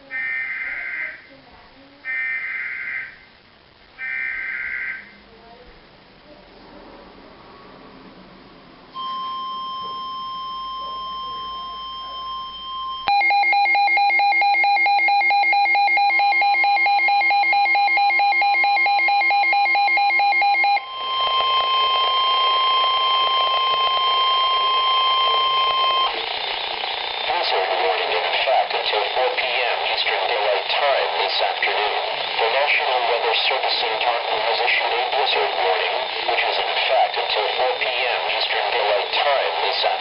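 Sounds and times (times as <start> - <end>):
steady high alert tone: 9.0 - 40.0.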